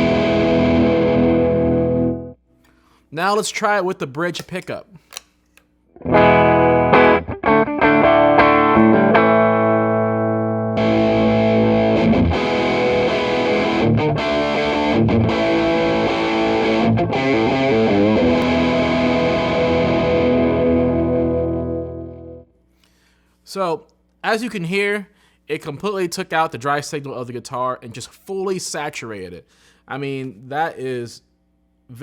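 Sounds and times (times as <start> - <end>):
distorted electric guitar chords: 0.0 - 2.4, 6.0 - 22.5.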